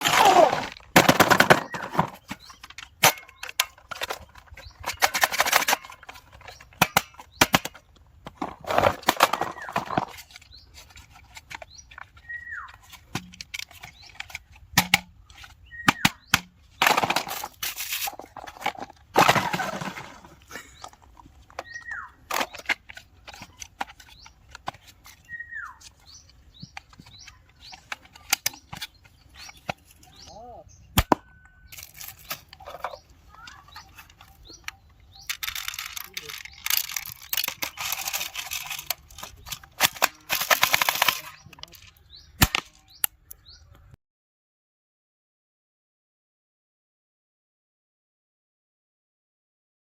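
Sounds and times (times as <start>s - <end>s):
toy guns cocking clicks: 35.3s - 41.3s.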